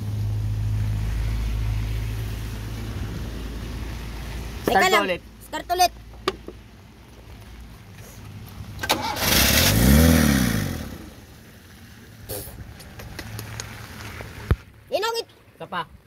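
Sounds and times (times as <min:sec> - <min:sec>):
jeep engine cranking and revving: 0:07.2 - 0:14.5.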